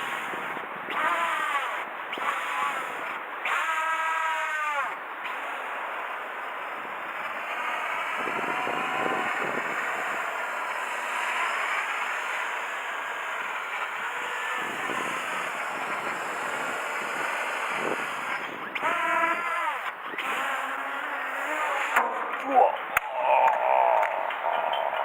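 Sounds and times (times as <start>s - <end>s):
radio-controlled aircraft motors whining: 0.0s - 22.0s
wind buffeting microphone: 8.1s - 10.4s, 14.5s - 19.6s.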